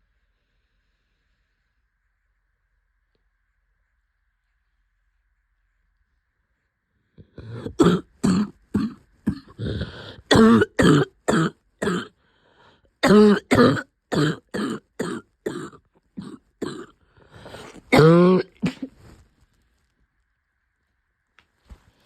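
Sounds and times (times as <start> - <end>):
woman coughing: 7.4 - 12.1, 13.0 - 19.0.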